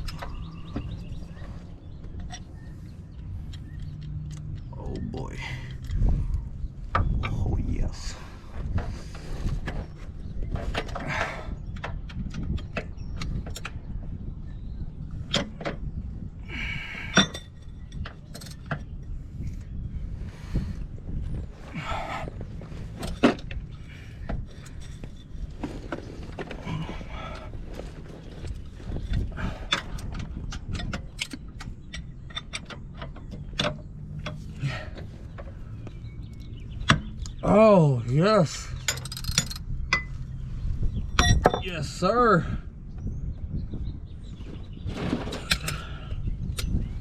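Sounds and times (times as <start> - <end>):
steady low rumble: 0.0 - 47.0
metallic clicks and knocks: 29.7 - 35.6, 38.8 - 40.2
ratchet clicks and metal taps: 38.8 - 40.2.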